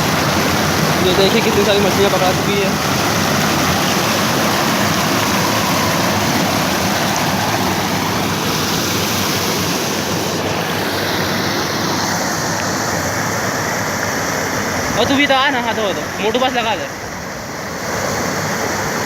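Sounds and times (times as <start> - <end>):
rushing water: 0.0 - 19.0.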